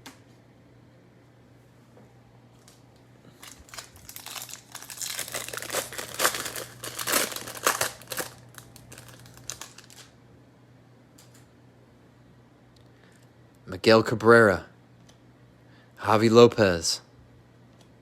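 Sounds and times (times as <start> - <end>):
faint low hum: 0.0 - 18.0
foil wrapper crinkling and tearing: 3.3 - 10.2.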